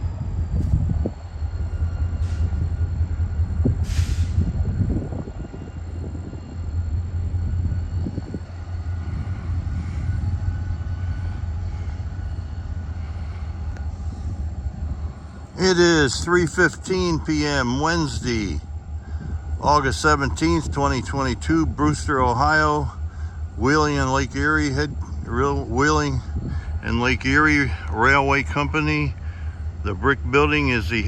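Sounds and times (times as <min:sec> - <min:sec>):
diesel locomotive rumbling: 0:00.0 - 0:31.0
brief hiss: 0:03.8 - 0:04.4.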